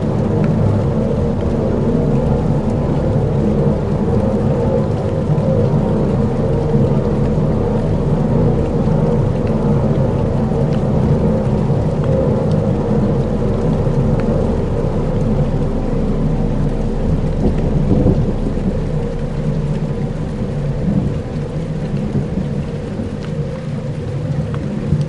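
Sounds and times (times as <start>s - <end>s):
deep rumbling drone: 0.0s - 25.0s
rain-like hiss: 0.0s - 25.0s
soft ticks: 8.5s - 15.7s, 16.6s - 25.0s.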